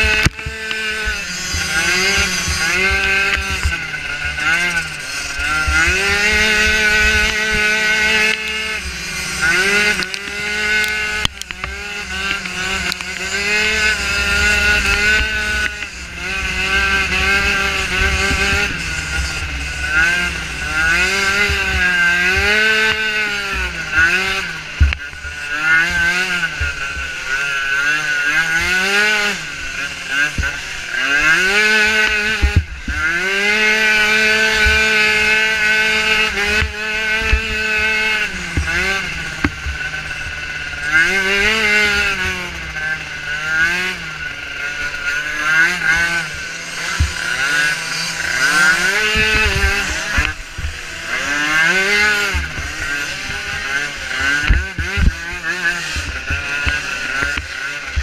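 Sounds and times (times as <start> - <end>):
small atv engine revving: 0.0 - 58.0
low thumps: 13.5 - 23.8.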